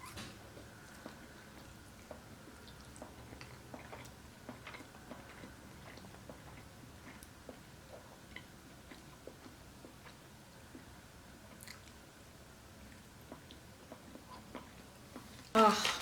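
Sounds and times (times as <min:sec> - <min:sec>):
mouth chewing: 0:00.9 - 0:10.9.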